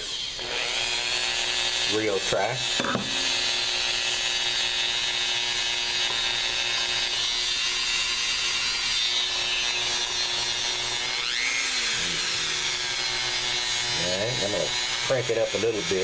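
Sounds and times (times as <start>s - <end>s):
rotary tool grinding whine: 0.0s - 16.0s.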